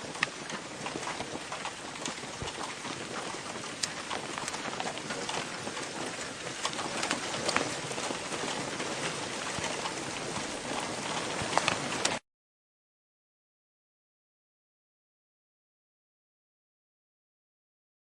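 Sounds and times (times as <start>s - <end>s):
rain on a hard surface: 0.0s - 12.2s.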